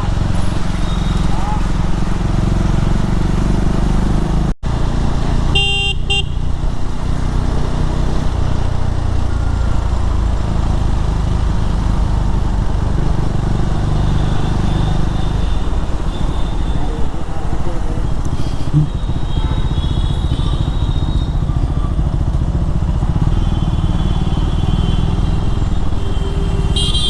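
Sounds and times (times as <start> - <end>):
motorcycle engine and wind rumble: 0.0 - 27.0
vehicle horn honking: 5.5 - 6.5, 23.3 - 27.0.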